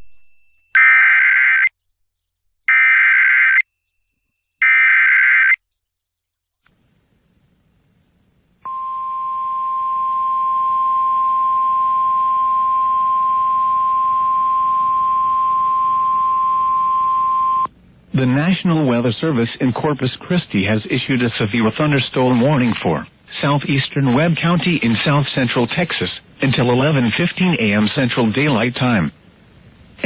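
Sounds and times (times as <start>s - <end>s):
steady attention tone: 0.0s - 1.7s
digital data tone bursts: 0.8s - 1.7s
faint hiss: 5.6s - 8.7s.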